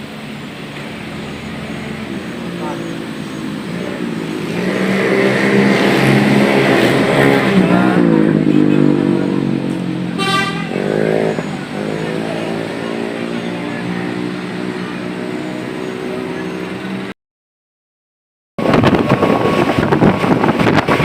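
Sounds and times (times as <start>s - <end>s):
diesel bus engine running: 0.0s - 17.1s
bus horn toot: 10.1s - 11.4s.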